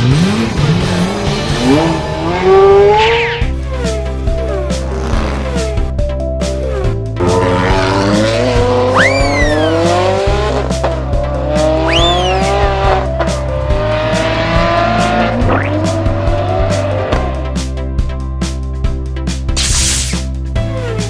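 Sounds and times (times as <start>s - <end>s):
tire screeches: 0.0s - 5.9s, 7.2s - 17.6s
race car engine revving: 0.0s - 6.0s, 6.8s - 20.4s
background music: 0.0s - 21.0s.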